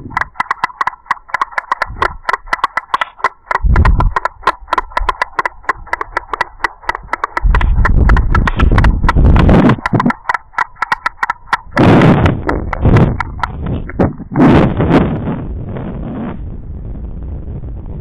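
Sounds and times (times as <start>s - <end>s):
low rumbling noise: 0.0s - 0.4s, 7.0s - 18.0s.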